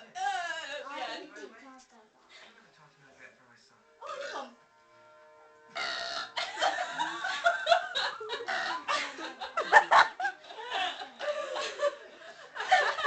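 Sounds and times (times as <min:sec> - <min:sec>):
girls laughing: 0:06.4 - 0:13.0.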